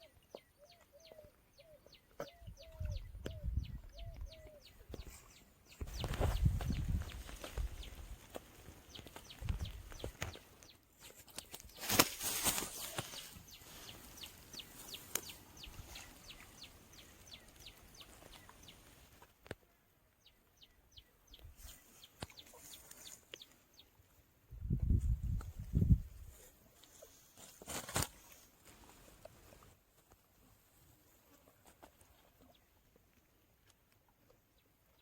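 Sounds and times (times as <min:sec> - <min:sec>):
bird chirping: 0:00.0 - 0:10.8, 0:12.8 - 0:19.1.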